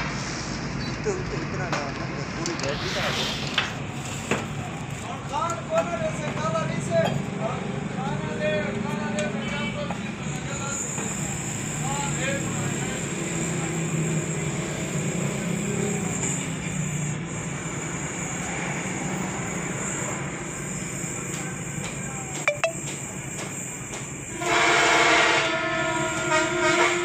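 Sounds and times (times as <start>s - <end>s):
horn-like pitched tone: 22.5s - 22.8s.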